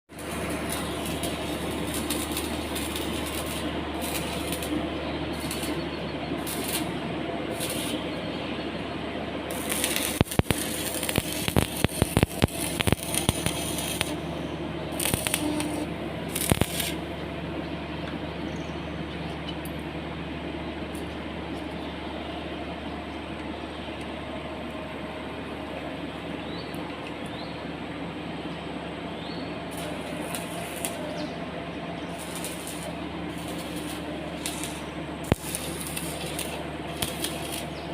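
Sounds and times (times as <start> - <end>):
machine hum: 0.1 - 37.9.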